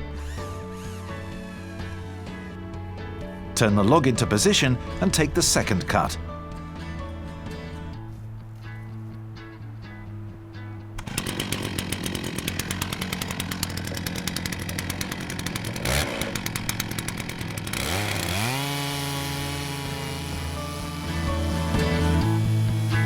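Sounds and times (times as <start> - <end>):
chainsaw cutting log: 0.0 - 3.6, 11.0 - 23.0.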